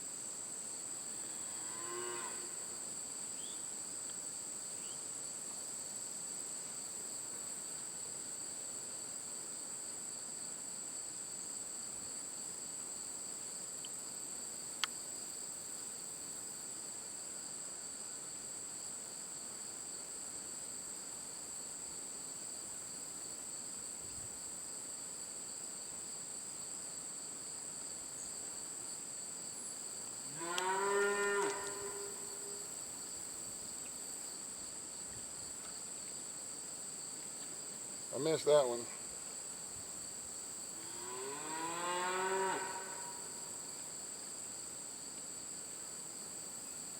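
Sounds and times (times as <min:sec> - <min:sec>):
cow mooing: 0:01.5 - 0:02.6, 0:30.3 - 0:32.6, 0:41.0 - 0:43.3.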